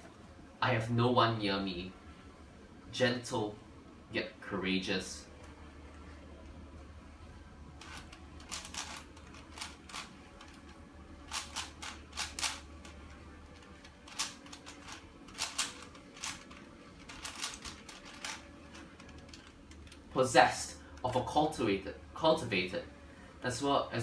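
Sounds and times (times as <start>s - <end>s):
puzzle cube plastic clicks: 7.8s - 20.1s.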